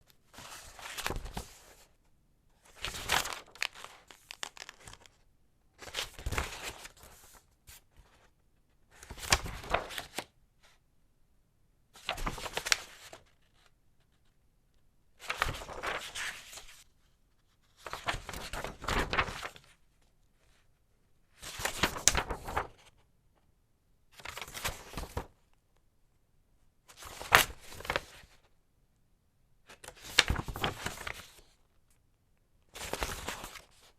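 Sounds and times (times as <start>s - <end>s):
paper pages turning: 0.3s - 1.9s, 2.6s - 5.2s, 5.8s - 8.3s, 9.0s - 10.3s, 12.0s - 13.7s, 15.2s - 16.8s, 17.6s - 19.7s, 21.4s - 23.0s, 24.2s - 25.3s, 26.9s - 28.3s, 29.8s - 31.5s, 32.8s - 33.9s.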